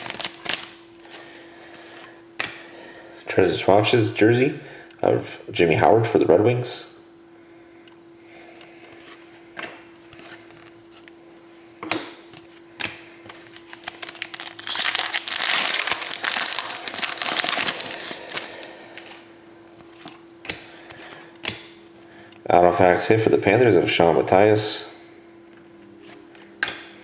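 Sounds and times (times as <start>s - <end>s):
wrappers tearing and crinkling: 0.0s - 0.8s, 13.4s - 19.2s
faint hum: 0.0s - 27.0s.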